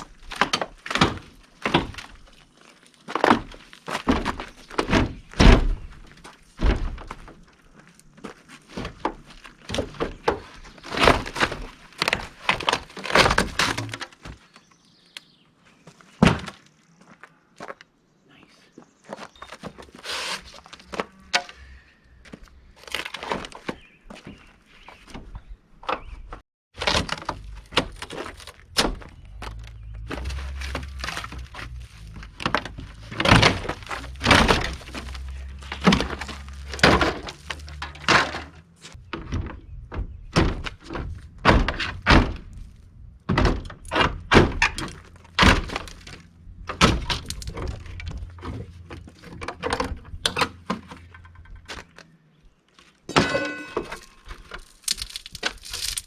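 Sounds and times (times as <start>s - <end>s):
demolition knocks and bangs: 32.3s - 42.6s.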